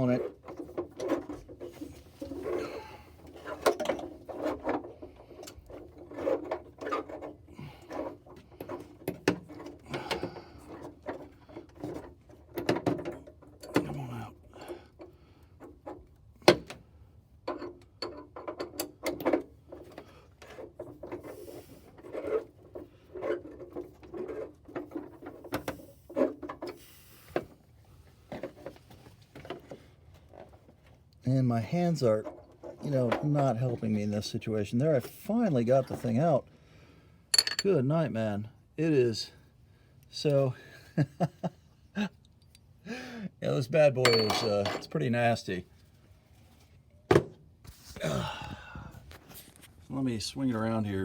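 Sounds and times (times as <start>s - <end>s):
metal clicks and knocks: 17.4s - 19.5s.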